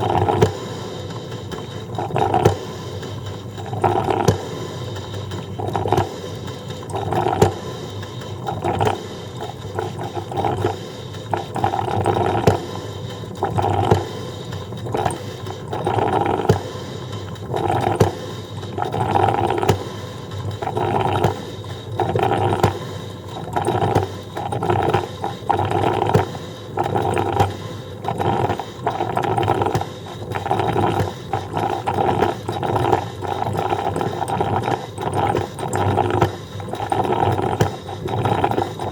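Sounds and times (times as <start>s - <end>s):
coffee percolator gurgling: 0.0s - 38.9s
small clicks and ticks: 0.0s - 38.9s.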